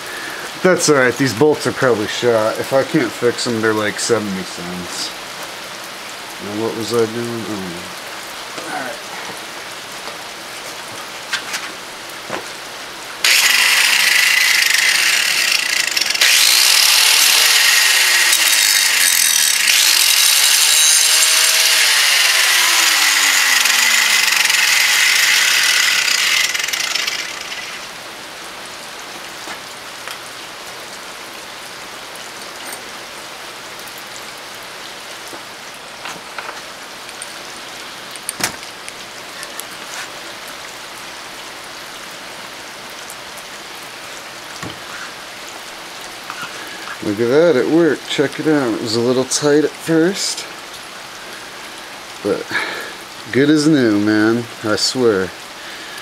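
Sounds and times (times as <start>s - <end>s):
angle grinder grinding metal: 13.2s - 28.0s.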